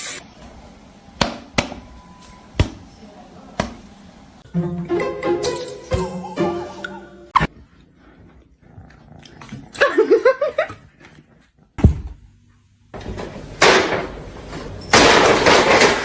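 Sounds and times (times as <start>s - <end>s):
sharp knock: 11.8s - 12.2s.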